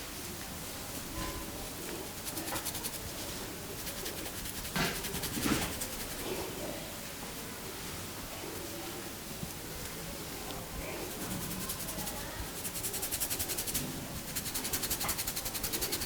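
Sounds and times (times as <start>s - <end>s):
hands rubbing hair: 3.7s - 6.4s, 11.1s - 16.0s.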